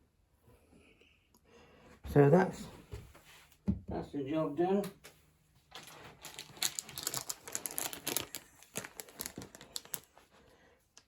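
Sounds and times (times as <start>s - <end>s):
packaging crinkling and rustling: 5.7s - 10.3s.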